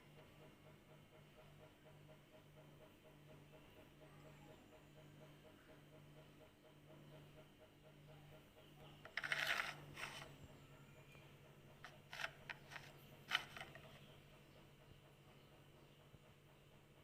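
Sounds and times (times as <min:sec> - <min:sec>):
kitchen items scraping: 0:09.0 - 0:10.4, 0:11.8 - 0:14.0.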